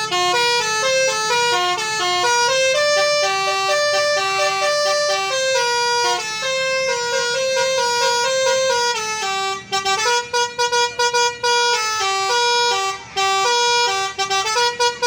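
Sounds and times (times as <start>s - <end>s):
multi-tone bus horn tune: 0.0s - 15.0s.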